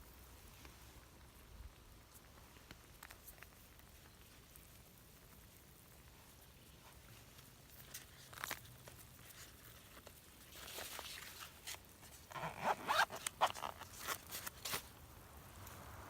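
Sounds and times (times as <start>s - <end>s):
rustles scrapes and clicks: 6.8s - 15.0s.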